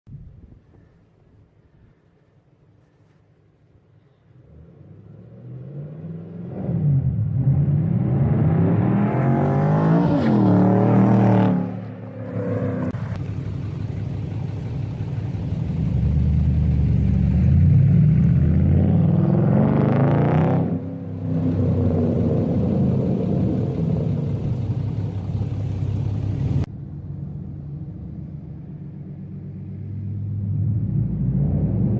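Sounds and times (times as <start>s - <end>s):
car engine revving: 5.0s - 26.7s.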